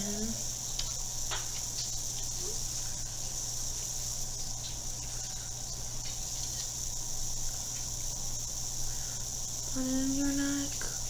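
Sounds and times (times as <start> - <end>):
faint ticks: 0.0 - 2.6
high-pitched hiss: 0.0 - 11.0
low steady hum: 0.0 - 11.0.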